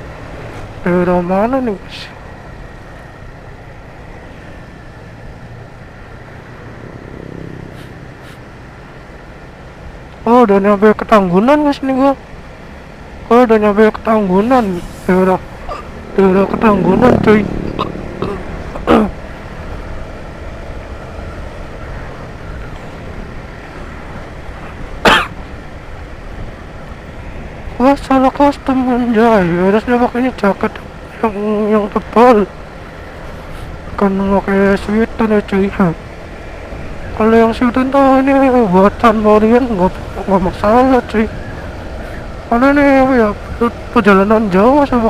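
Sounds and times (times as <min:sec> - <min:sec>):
road and wind noise: 0:00.0 - 0:45.0
motorcycle engine: 0:02.2 - 0:10.0, 0:14.2 - 0:27.7
rider vocal sound: 0:13.3 - 0:19.2.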